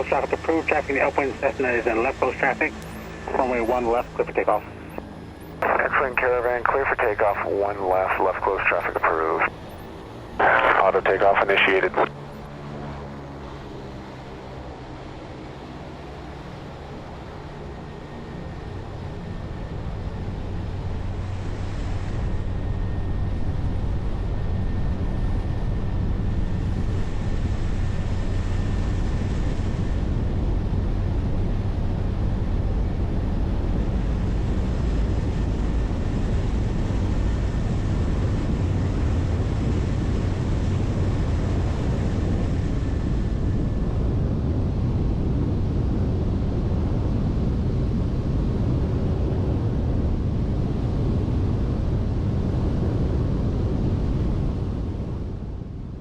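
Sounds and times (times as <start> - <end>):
high whine: 0.0 - 12.2
turboprop engine at full power: 0.0 - 56.0.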